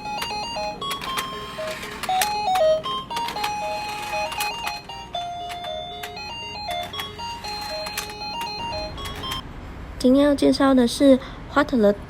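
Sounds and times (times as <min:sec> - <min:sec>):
bouncy electronic melody: 0:00.0 - 0:09.4.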